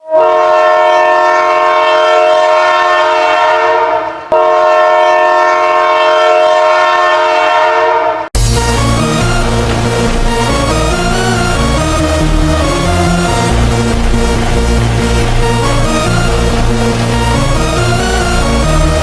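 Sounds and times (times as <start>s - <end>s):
goal horn blasts: 0.0s - 19.0s
electronic music: 8.4s - 19.0s.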